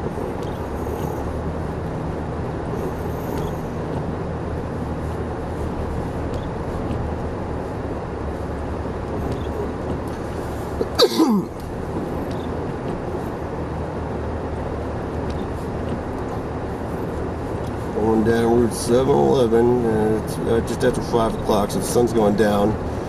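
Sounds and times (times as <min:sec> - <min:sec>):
car cabin noise on snowy road: 0:00.0 - 0:23.0
person sneezing: 0:10.8 - 0:11.5.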